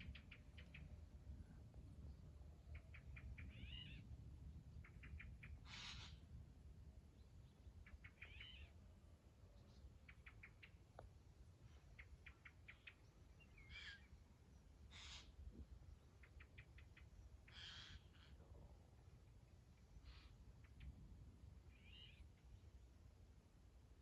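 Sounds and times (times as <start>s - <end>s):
small birds chirping: 0.0s - 1.0s, 2.1s - 6.2s, 7.2s - 8.7s, 9.6s - 11.1s, 11.8s - 14.2s, 14.9s - 18.4s, 19.3s - 21.1s
harsh rasping bird calls: 2.8s - 4.0s, 4.8s - 6.2s, 7.8s - 8.7s, 13.6s - 14.1s, 14.9s - 15.4s, 17.4s - 18.4s.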